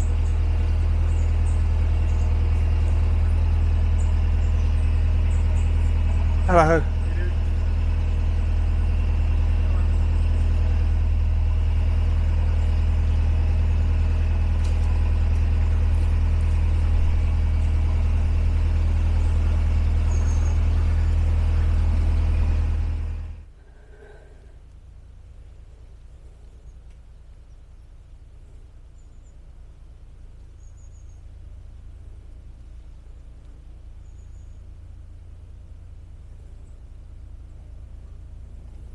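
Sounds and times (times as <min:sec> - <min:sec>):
bird chirping: 0:00.0 - 0:10.9, 0:12.5 - 0:22.4, 0:30.4 - 0:31.3, 0:32.9 - 0:34.7
diesel engine running: 0:00.0 - 0:38.9.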